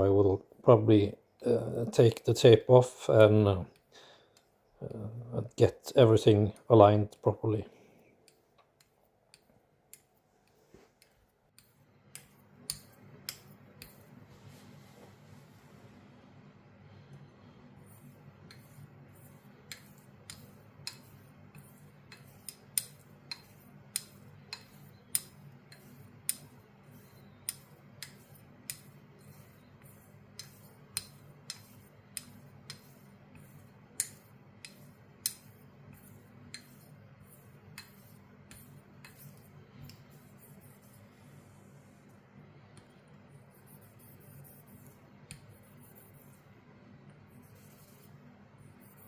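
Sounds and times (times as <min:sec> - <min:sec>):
steady low hum: 0:00.0 - 0:49.0
razor clicking on whetstone: 0:18.5 - 0:40.1.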